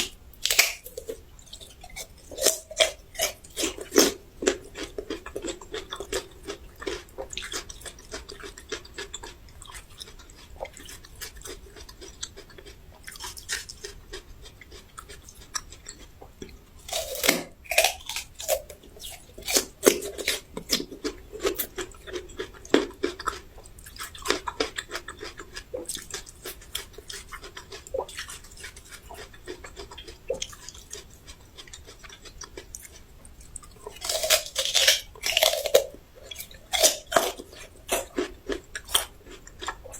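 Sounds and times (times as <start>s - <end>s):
chewing and crunching: 0.0s - 39.9s.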